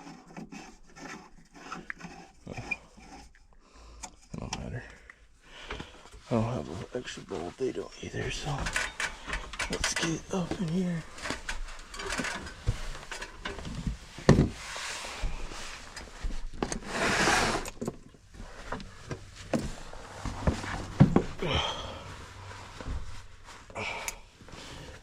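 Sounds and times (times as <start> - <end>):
rustling scrape: 0.0 - 3.3, 6.2 - 21.4, 22.0 - 23.8.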